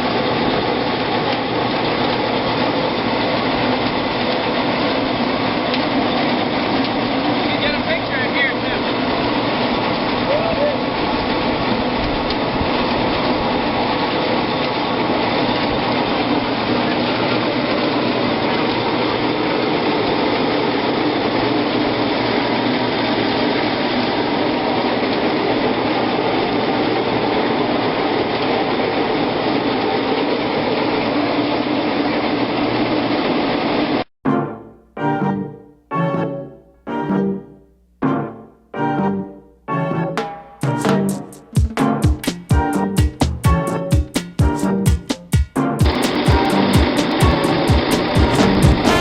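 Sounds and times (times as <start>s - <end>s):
grape crusher running: 0.0s - 33.8s, 45.8s - 49.0s.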